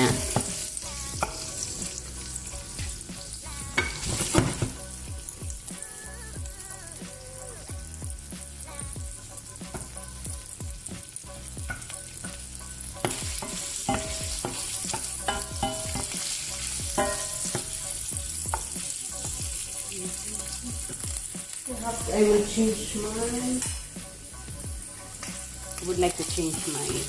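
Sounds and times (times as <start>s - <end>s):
prawns sizzling in a frying pan: 0.0s - 27.0s
wooden spoon knocking and scraping pan: 3.8s - 4.8s, 11.6s - 17.8s, 18.4s - 19.4s.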